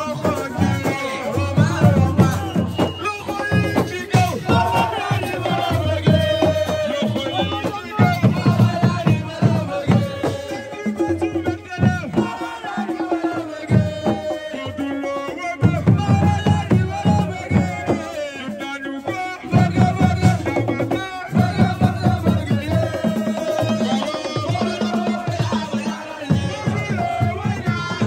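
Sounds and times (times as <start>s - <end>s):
fast hand-drum beats: 0.0s - 28.0s.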